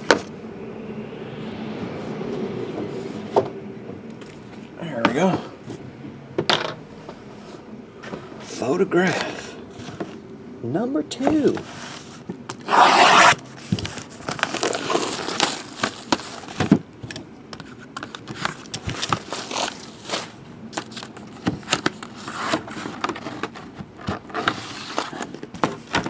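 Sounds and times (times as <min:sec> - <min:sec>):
cardboard box scraping and clicks: 0:12.5 - 0:16.5
wrapping ripping: 0:14.4 - 0:16.4.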